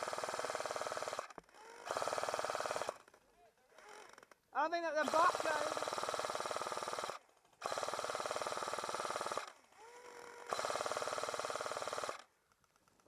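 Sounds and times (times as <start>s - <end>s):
airsoft gun firing bursts: 0.0s - 3.0s, 5.0s - 12.3s.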